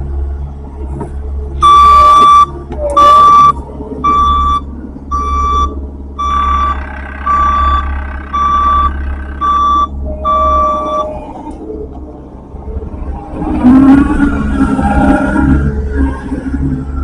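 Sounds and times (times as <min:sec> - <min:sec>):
diesel engine running: 0:00.0 - 0:17.0
backup alarm beeping: 0:01.6 - 0:11.4.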